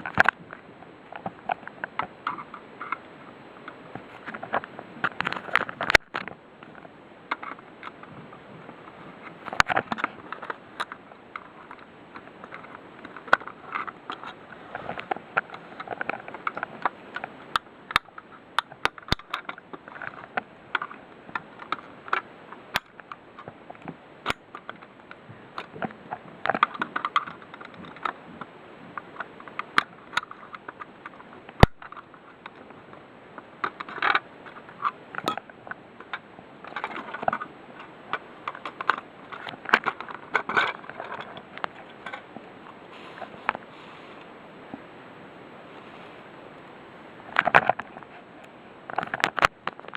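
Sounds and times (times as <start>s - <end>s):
hard objects scraping and rustling: 3.7s - 44.9s, 45.6s - 49.9s.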